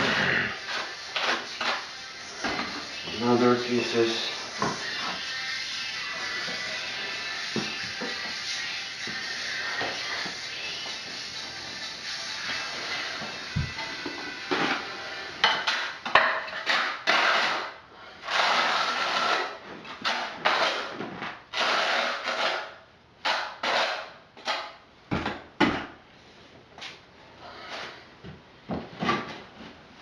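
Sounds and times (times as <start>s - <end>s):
steel trowel scraping mortar: 0.0s - 5.1s, 16.5s - 24.7s.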